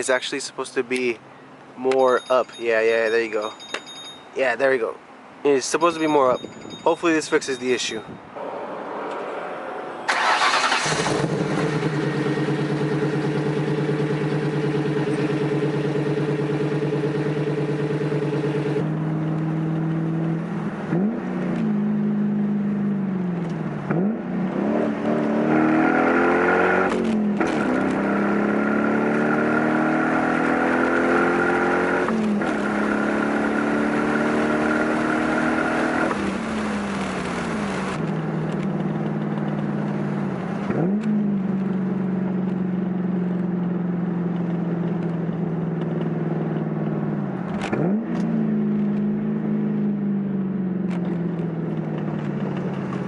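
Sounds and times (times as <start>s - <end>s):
car engine idling: 8.4s - 19.4s
car accelerating through gears: 8.4s - 38.0s, 40.6s - 42.6s, 45.8s - 53.0s
car engine starting: 8.4s - 53.0s.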